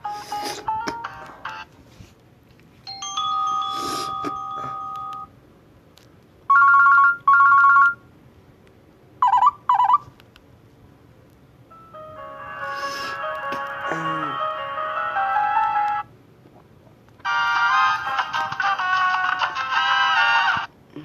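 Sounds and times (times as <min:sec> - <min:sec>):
multi-note phone melody: 0:00.0 - 0:01.7, 0:02.9 - 0:05.3, 0:11.7 - 0:16.1, 0:17.2 - 0:20.6
chime: 0:02.9 - 0:05.3
phone alert tones: 0:02.9 - 0:05.3, 0:06.5 - 0:08.0, 0:09.2 - 0:10.0.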